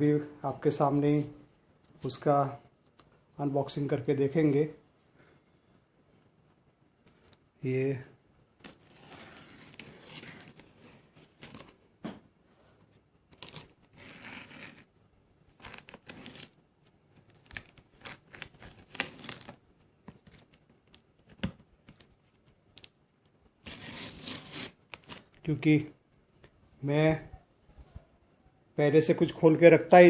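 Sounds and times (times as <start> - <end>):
packaging ripping and crinkling: 17.2 - 19.6.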